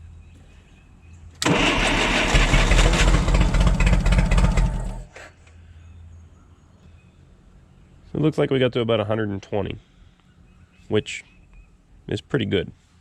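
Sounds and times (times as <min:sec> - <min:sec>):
engine cranking on starter: 0:01.4 - 0:05.1.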